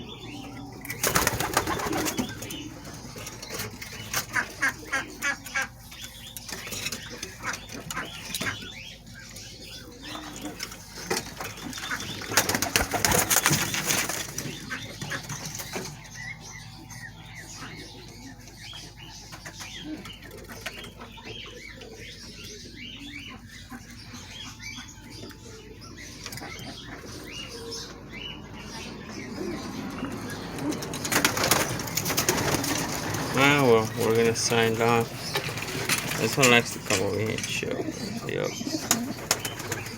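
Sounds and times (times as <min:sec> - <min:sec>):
pigeons flapping wings: 0:00.9 - 0:05.0, 0:10.9 - 0:15.9, 0:30.3 - 0:39.9.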